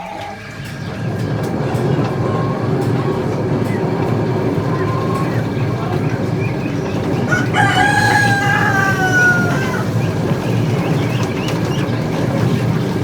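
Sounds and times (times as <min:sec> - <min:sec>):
plucking machine rumbling: 0:00.0 - 0:13.0
rooster crowing: 0:07.0 - 0:10.6.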